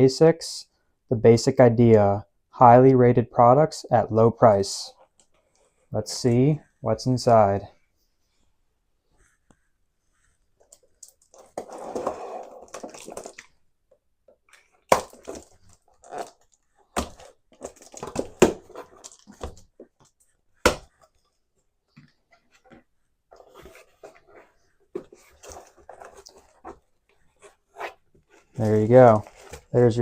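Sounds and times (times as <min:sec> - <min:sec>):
cardboard handling and scraping: 0:09.2 - 0:13.6, 0:14.6 - 0:30.0
cardboard cracking: 0:11.0 - 0:13.6, 0:14.5 - 0:19.9
cardboard tearing and rustling: 0:11.3 - 0:13.5, 0:15.0 - 0:19.6.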